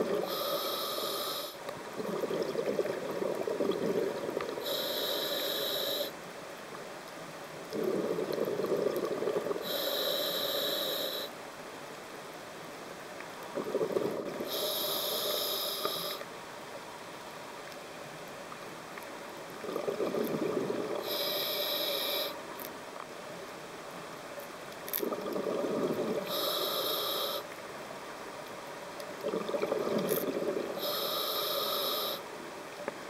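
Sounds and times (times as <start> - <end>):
regulator breathing hiss: 0.2 - 1.6, 4.6 - 6.2, 9.6 - 11.4, 14.4 - 16.3, 21.0 - 22.4, 26.2 - 27.5, 30.8 - 32.3
exhaled bubbles burbling: 2.0 - 4.7, 7.8 - 9.6, 13.5 - 14.5, 19.6 - 21.1, 25.0 - 26.3, 29.2 - 30.8.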